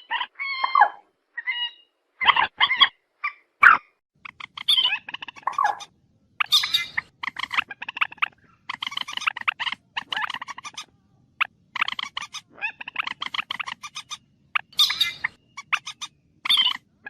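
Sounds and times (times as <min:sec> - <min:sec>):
bird harsh squawks and cackles: 0:00.0 - 0:17.0.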